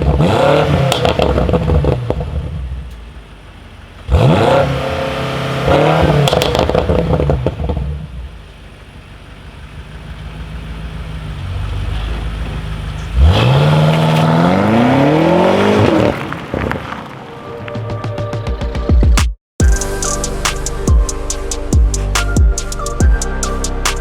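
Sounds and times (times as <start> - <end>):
car engine revving hard: 0.0 - 2.7, 4.0 - 7.9, 10.4 - 16.6
exhaust crackles: 0.0 - 17.8.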